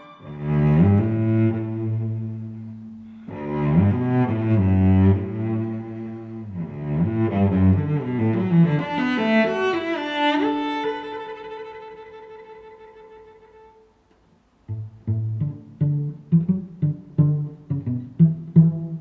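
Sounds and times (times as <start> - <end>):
bowed strings music: 0.0 - 14.0, 14.6 - 19.0.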